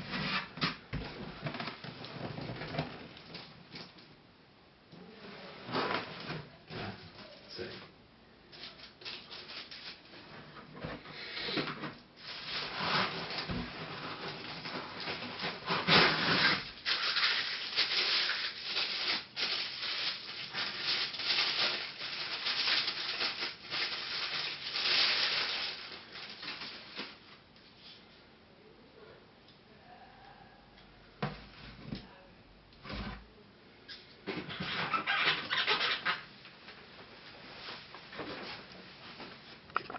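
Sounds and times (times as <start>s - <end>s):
packaging rustling and scraping: 0.0s - 4.0s, 8.6s - 27.4s.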